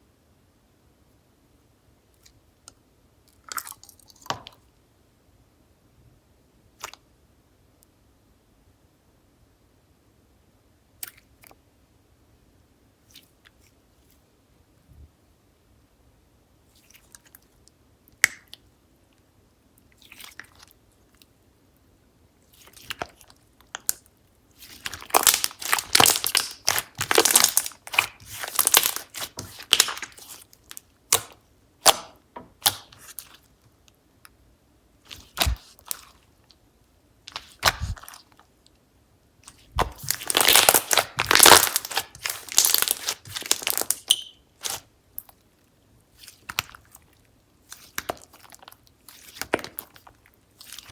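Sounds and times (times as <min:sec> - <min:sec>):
slime squeezed with sticky pops: 0:24.6 - 0:33.5, 0:35.1 - 0:36.2, 0:37.3 - 0:38.4, 0:39.4 - 0:45.4, 0:47.6 - 0:50.9.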